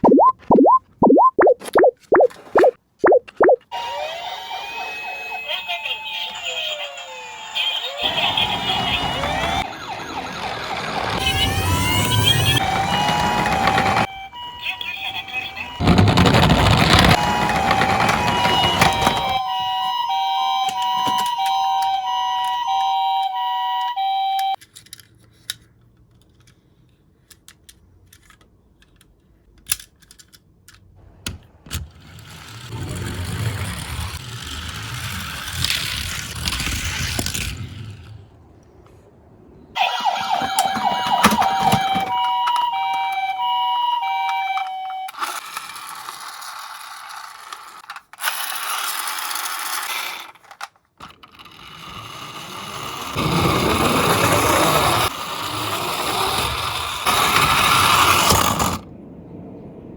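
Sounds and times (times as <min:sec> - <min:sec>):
toy two-tone siren: 0:02.2 - 0:24.6, 0:39.8 - 0:47.8
toy cars rolling down plastic: 0:03.7 - 0:23.0, 0:31.8 - 0:38.3, 0:39.8 - 0:58.8
toys clicking when handled: 0:24.6 - 0:30.9.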